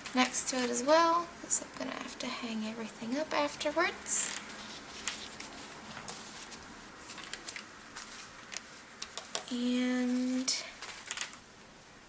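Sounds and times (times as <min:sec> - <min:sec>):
paper ticks and rustles: 0:04.2 - 0:11.4.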